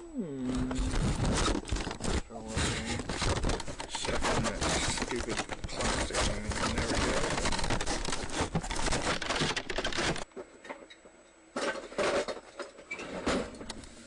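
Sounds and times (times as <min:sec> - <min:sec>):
plastic packaging crinkling: 0:00.5 - 0:10.2.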